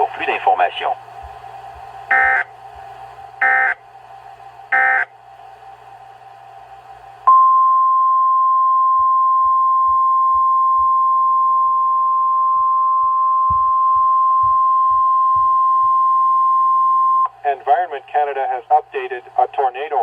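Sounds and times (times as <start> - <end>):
faint radio hiss: 0.0 - 7.3, 17.3 - 20.0
steady warning alarm beep: 2.1 - 2.5, 3.4 - 3.8, 4.7 - 5.1, 7.3 - 17.3.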